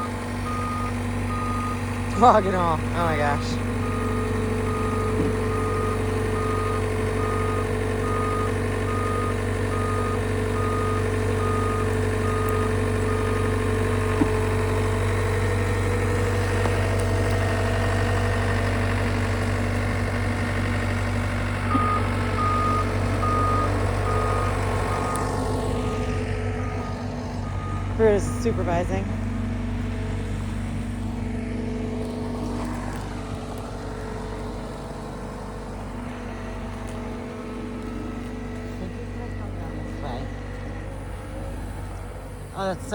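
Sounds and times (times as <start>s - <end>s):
backup alarm beeping: 0.0s - 15.0s, 21.7s - 29.2s, 37.0s - 40.8s
diesel engine running under load: 0.0s - 42.9s.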